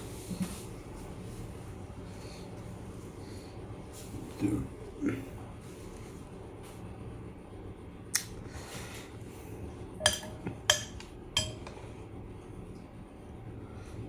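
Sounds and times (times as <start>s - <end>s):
tableware clinking: 10.0s - 11.8s.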